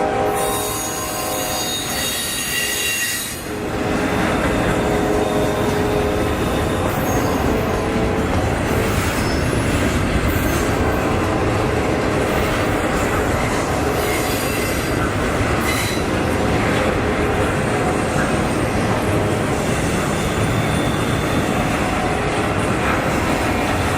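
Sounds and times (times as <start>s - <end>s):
steel wheels rumbling on rail: 0.0s - 23.9s
high wheel squeal: 0.4s - 3.5s, 4.6s - 7.7s, 20.1s - 21.7s.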